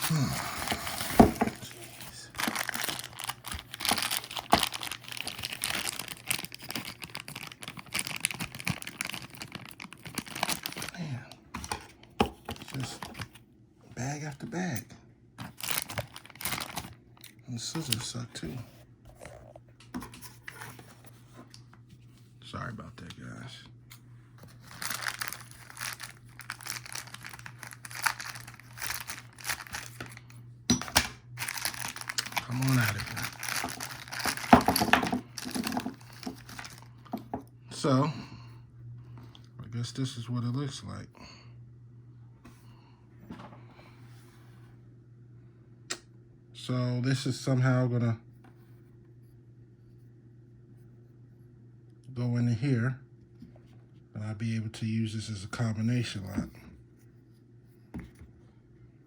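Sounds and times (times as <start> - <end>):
plastic bag tearing: 0.0 - 11.0, 15.5 - 17.0, 24.6 - 30.3, 31.4 - 36.9
plastic packaging crinkling: 0.0 - 11.0, 15.4 - 17.0, 24.5 - 30.4, 31.4 - 37.4.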